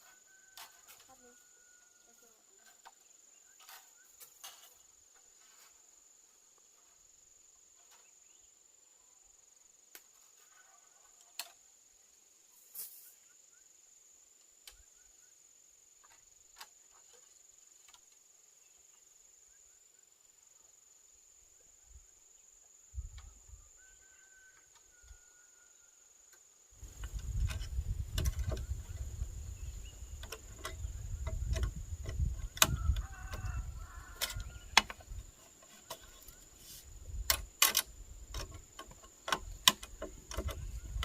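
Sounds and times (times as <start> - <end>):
insects chirring: 0.0 - 41.0
faint sharp clicks and knocks: 37.2 - 41.0.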